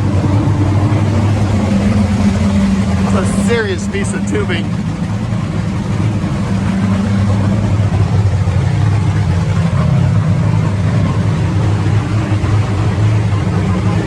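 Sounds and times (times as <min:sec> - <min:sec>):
drag racing engine idling: 0:00.0 - 0:14.0.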